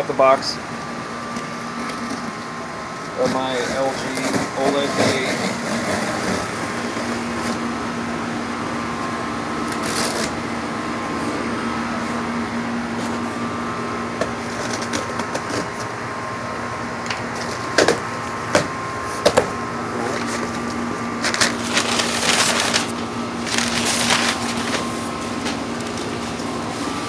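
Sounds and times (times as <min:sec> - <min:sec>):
cardboard rustling and scraping: 0:03.2 - 0:07.7, 0:17.1 - 0:27.0.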